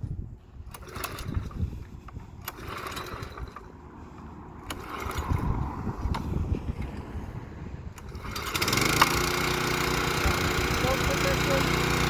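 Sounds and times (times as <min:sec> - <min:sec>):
small gasoline engine starting: 0:00.6 - 0:01.8, 0:02.4 - 0:03.9, 0:04.6 - 0:07.0, 0:07.9 - 0:12.0.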